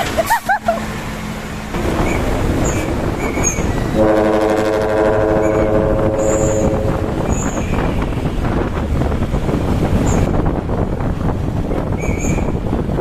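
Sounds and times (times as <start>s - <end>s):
diesel engine running: 0.0s - 12.0s
truck air horn chord: 4.0s - 7.3s.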